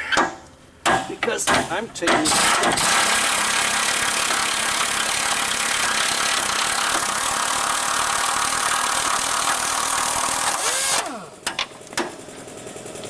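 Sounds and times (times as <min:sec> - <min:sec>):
motor tool whirring: 0:02.2 - 0:11.5.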